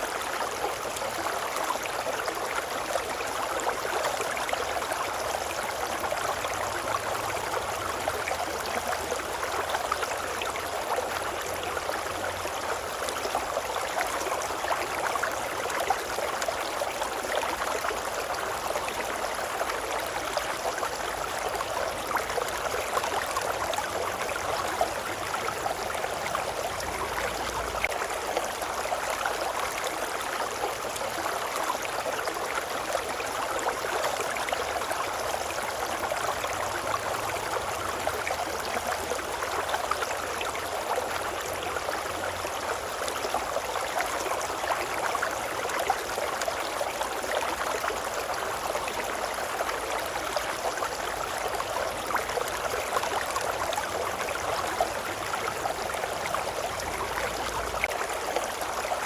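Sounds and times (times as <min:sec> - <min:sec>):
river water babbling: 0:00.0 - 0:59.0.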